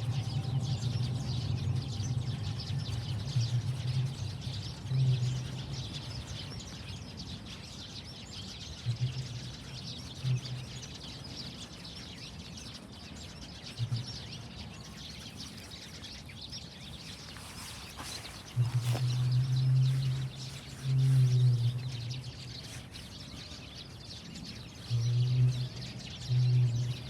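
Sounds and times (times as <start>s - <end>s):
small birds chirping: 0.0s - 27.0s
low rumbles: 17.1s - 22.7s.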